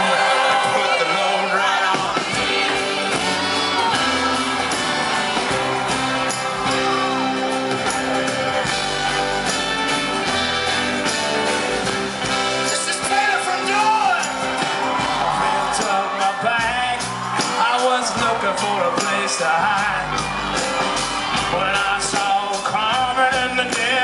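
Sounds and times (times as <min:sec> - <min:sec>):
fans whooping and shouting: 0:00.0 - 0:24.0
live rock band playing: 0:00.0 - 0:24.0.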